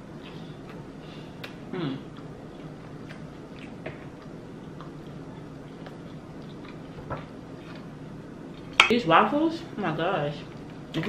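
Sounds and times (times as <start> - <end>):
chewing crisp waffle: 2.1 - 8.7.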